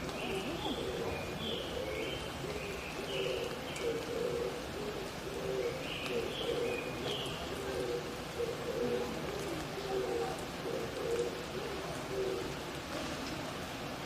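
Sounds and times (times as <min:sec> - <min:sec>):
doves cooing: 0:00.0 - 0:13.7
rain hiss: 0:00.0 - 0:14.0.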